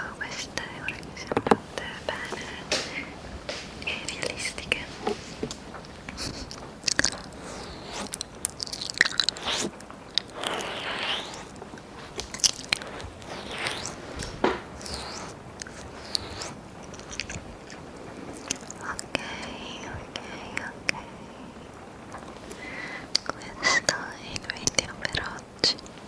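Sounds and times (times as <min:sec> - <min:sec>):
lip smacks and licks: 0:01.8 - 0:21.0, 0:22.2 - 0:26.0
slurping licks: 0:03.8 - 0:19.6.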